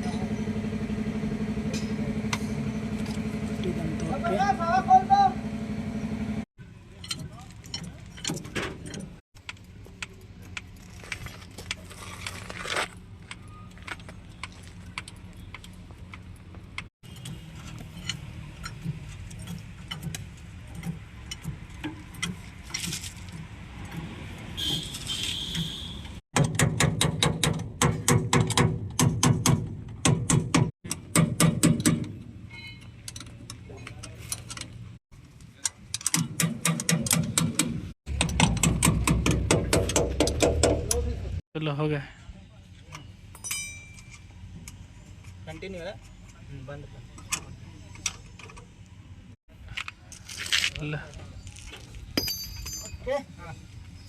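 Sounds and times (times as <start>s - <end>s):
metallic clinks and taps: 52.2s - 53.0s.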